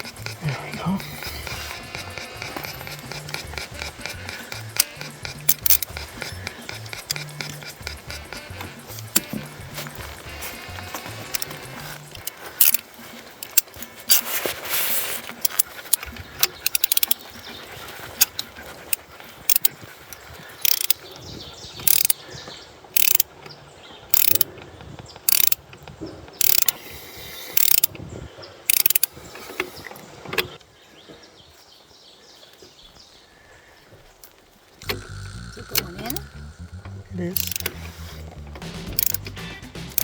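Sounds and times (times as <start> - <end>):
longer rasp: 0.0 - 12.2, 34.8 - 40.0
ratchet clicking: 0.0 - 12.8, 15.4 - 17.2, 19.5 - 19.7, 20.6 - 21.0, 21.8 - 22.2, 23.0 - 23.2, 24.1 - 24.4, 25.3 - 25.6, 26.4 - 26.8, 27.6 - 27.9, 28.7 - 29.1, 34.8 - 40.0.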